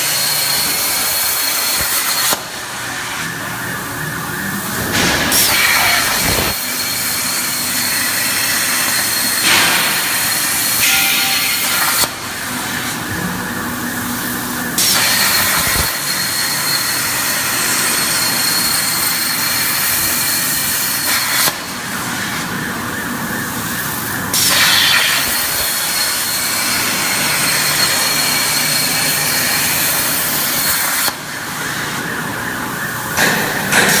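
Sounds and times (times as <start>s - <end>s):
plasma cutter arc hissing: 4.9s - 12.4s, 14.8s - 21.5s, 24.3s - 31.1s.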